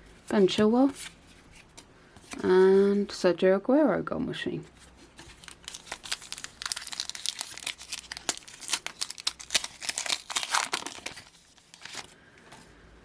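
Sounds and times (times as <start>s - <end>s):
plastic wrapper crinkling: 5.2s - 12.2s.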